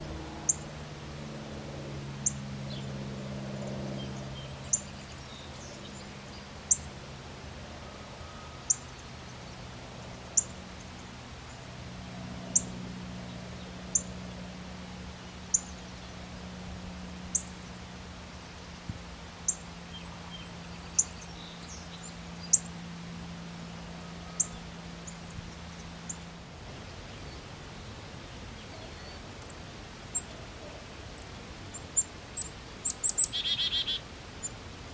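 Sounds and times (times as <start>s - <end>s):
low steady hum: 0.0s - 34.9s
bird chip call: 32.9s - 34.0s.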